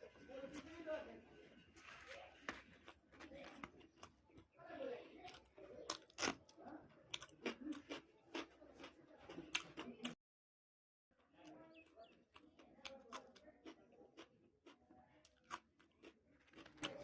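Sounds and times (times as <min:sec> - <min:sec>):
bread tearing and chewing: 0:05.2 - 0:10.2, 0:12.2 - 0:17.0.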